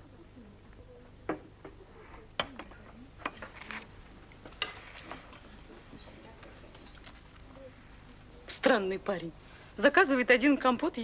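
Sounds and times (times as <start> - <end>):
murmur of voices: 0.0 - 9.9.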